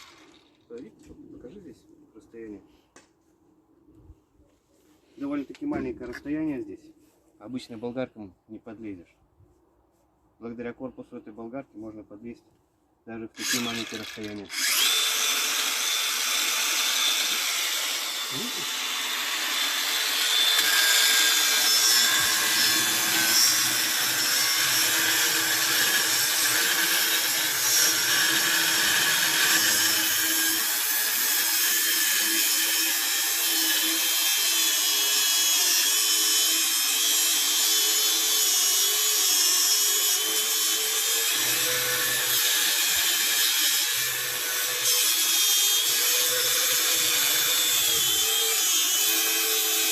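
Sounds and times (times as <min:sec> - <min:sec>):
angle grinder cutting: 0:00.0 - 0:00.6, 0:13.4 - 0:49.9.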